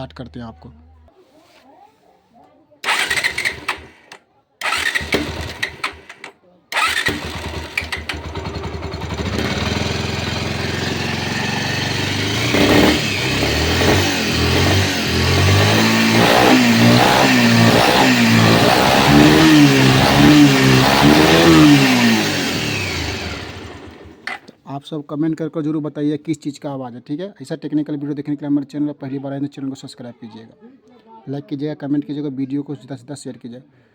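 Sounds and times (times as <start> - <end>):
motorcycle engine revving: 2.8 - 24.5.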